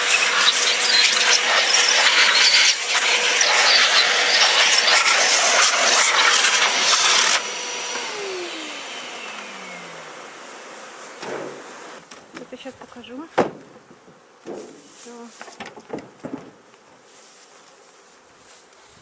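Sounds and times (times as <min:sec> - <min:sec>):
motor whine spinning down: 0:00.0 - 0:12.0
vacuum blower rushing air: 0:00.0 - 0:12.1.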